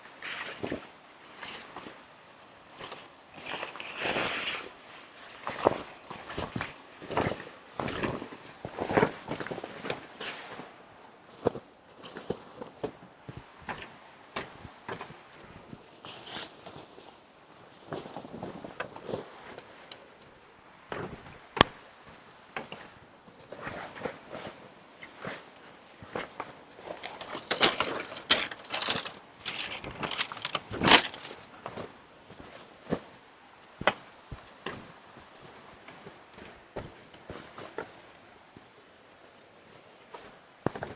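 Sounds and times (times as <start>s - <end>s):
objects being handled: 27.0s - 31.5s
rustling and clatter: 27.0s - 31.5s.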